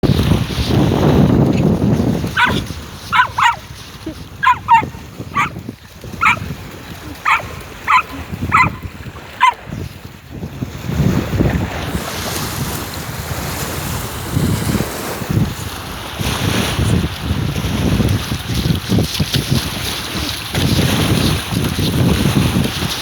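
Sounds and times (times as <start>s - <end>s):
wind buffeting microphone: 0.0s - 23.0s
dog barking in high yaps: 2.3s - 5.6s, 6.2s - 6.4s, 7.2s - 9.6s.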